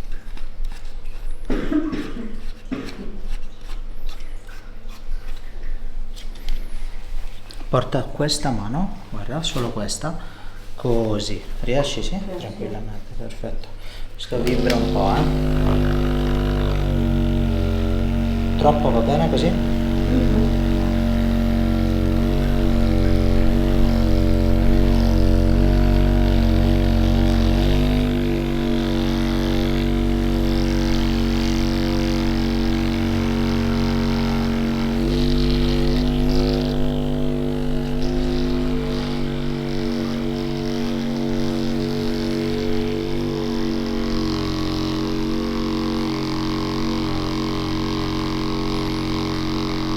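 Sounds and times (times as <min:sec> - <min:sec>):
massager motor hum: 0:14.2 - 0:49.9.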